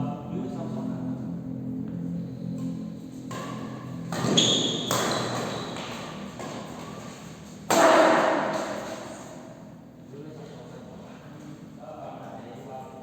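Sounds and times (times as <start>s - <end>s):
racket hitting shuttlecock: 3.2s - 9.4s
brief high squeak: 4.2s - 5.3s.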